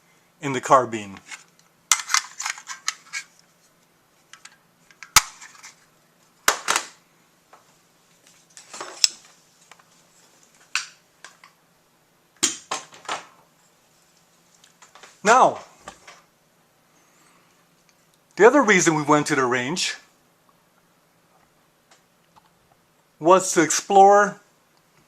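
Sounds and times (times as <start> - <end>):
hard objects clicking and clattering: 1.3 - 3.4.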